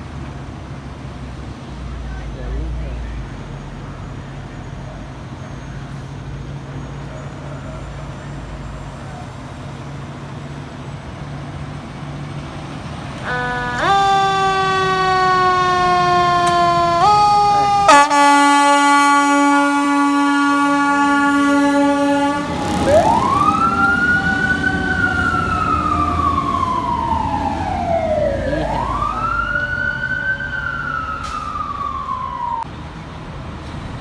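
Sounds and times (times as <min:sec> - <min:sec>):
fire truck engine rumble: 0:00.0 - 0:34.0
fire truck siren: 0:03.2 - 0:32.8
air horn blast: 0:13.2 - 0:27.5.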